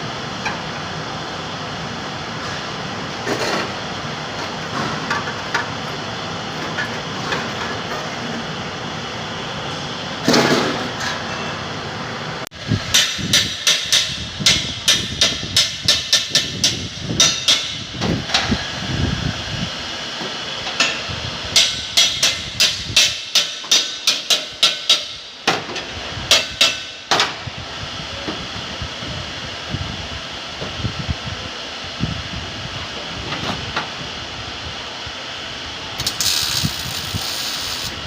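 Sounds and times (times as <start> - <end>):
hammer striking sheet metal: 12.9 - 17.8, 21.6 - 25.6.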